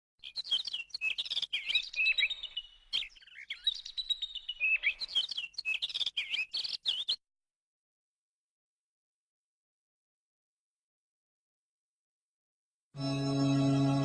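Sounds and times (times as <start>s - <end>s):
songbirds chirping and whistling: 0.2s - 7.2s.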